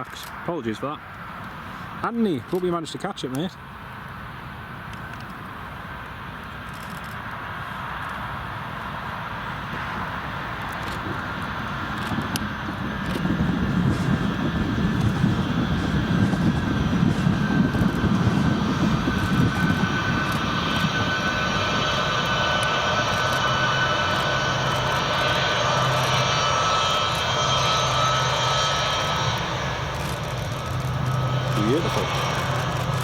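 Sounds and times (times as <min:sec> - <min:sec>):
jet engines landing: 0:00.0 - 0:33.0.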